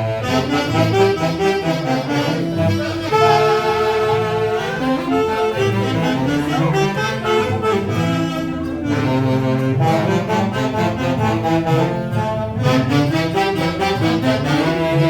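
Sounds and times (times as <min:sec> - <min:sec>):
live band playing: 0:00.0 - 0:15.0
saxophones playing melody: 0:00.0 - 0:15.0
violins: 0:00.0 - 0:15.0.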